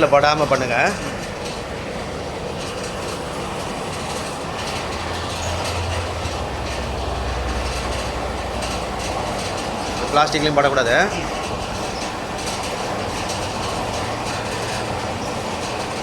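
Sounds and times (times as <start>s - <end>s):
low hum: 4.2s - 12.5s.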